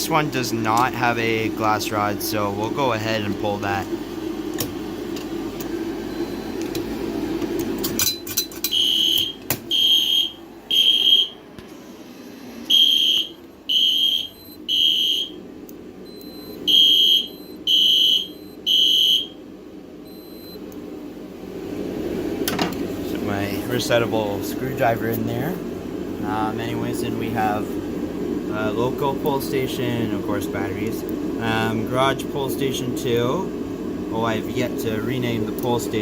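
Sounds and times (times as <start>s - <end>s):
steady low hum: 0.0s - 36.0s
fire alarm horn beeps: 8.6s - 11.4s, 12.7s - 15.4s, 16.0s - 19.4s.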